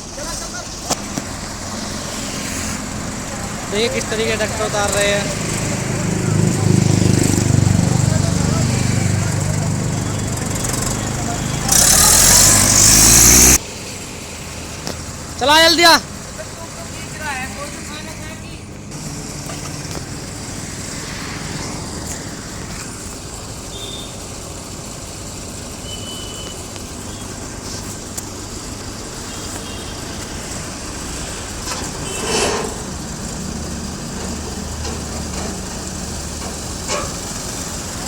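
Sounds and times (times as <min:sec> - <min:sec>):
diesel tractor engines running: 0:00.0 - 0:38.0
loud hiss: 0:11.4 - 0:17.9, 0:19.0 - 0:33.9.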